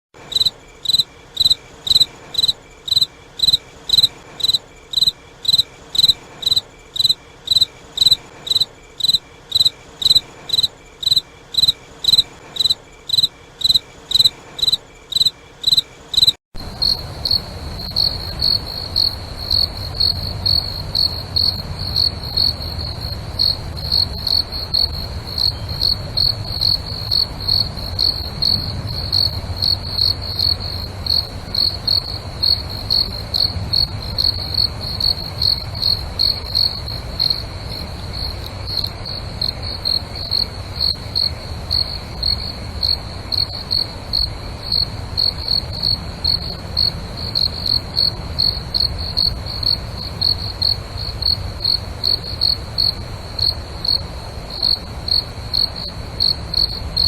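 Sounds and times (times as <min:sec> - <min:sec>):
crickets chirping: 0:00.2 - 0:57.0
steady low rumble: 0:16.6 - 0:57.0.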